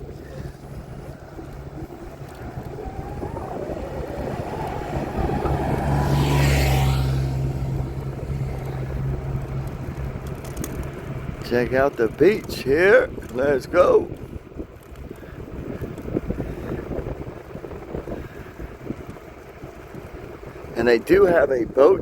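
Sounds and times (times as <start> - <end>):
vehicle passing by: 0.0 - 12.4.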